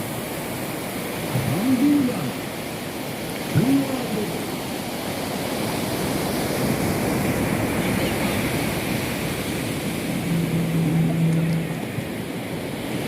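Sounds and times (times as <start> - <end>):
ocean surf washing on beach: 0.0 - 13.0
low hum: 9.6 - 12.6.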